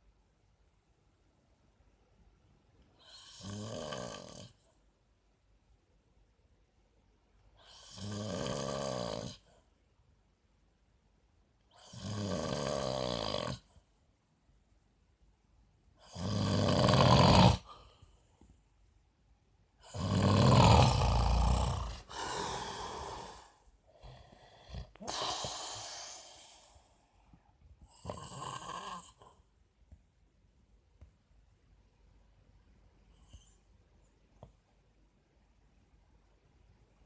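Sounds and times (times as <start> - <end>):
quiet breaths: 0.0 - 37.0
man snoring: 3.1 - 4.6, 7.7 - 9.4, 11.8 - 13.7, 16.0 - 17.7, 19.8 - 26.7, 27.9 - 29.3.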